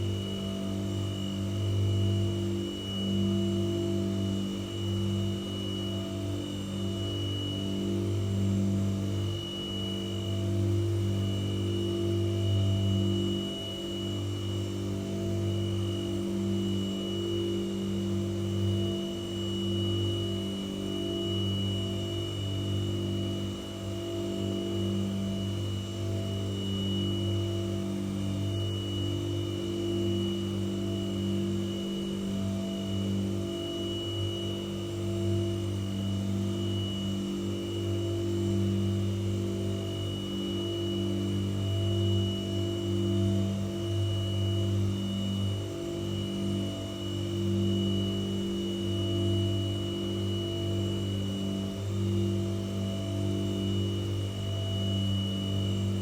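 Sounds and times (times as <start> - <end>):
white noise machine humming: 0.0 - 56.0.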